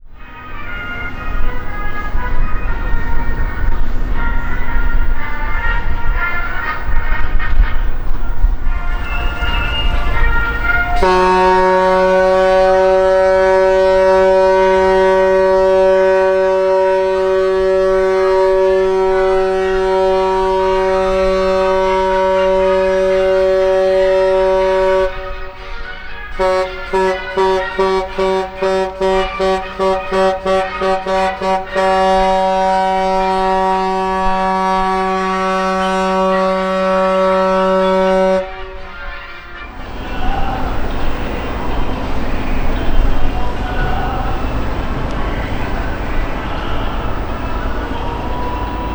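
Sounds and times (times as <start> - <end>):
deep ship horn blasts: 0.0 - 48.9.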